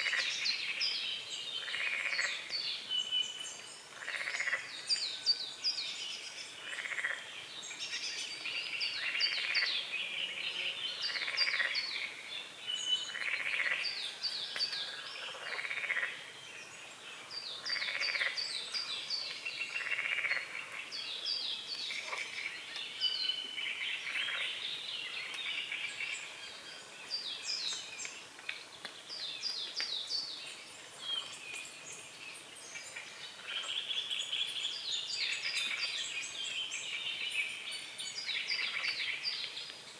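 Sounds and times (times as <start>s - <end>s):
frogs croaking: 0.0s - 0.8s, 1.6s - 2.5s, 3.9s - 4.9s, 6.6s - 7.3s, 9.0s - 9.8s, 10.9s - 12.3s, 13.0s - 14.0s, 14.8s - 16.3s, 17.5s - 21.0s, 23.6s - 24.6s
songbirds singing: 0.0s - 39.9s.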